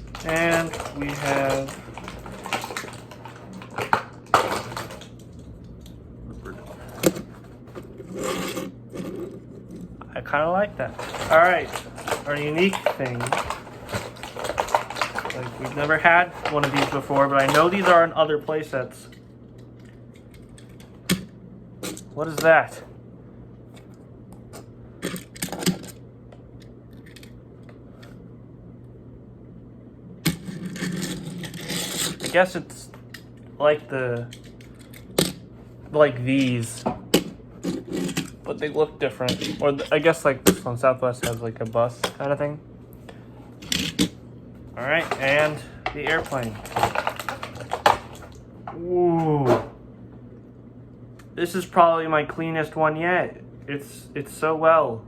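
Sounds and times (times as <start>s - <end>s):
plastic toy pieces clicking: 0.0s - 5.1s, 10.9s - 18.0s
plastic packaging rustling: 0.0s - 5.2s, 10.5s - 18.2s, 44.6s - 48.4s
rustling and handling noise: 0.0s - 21.1s, 30.4s - 49.8s
steady low hum: 0.0s - 55.0s.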